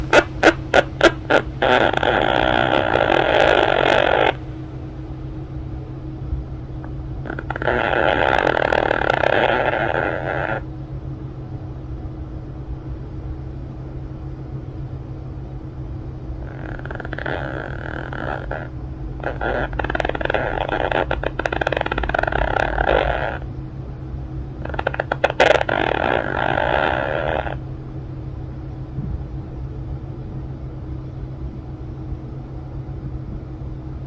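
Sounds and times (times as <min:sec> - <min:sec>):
parrot snoring: 0:00.0 - 0:05.0, 0:06.8 - 0:10.6, 0:16.4 - 0:23.5, 0:24.6 - 0:27.6.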